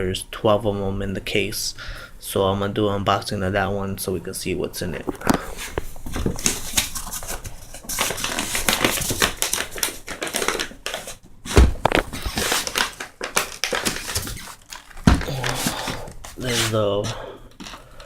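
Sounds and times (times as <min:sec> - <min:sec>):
cardboard rustling and crinkling: 0:04.8 - 0:17.8.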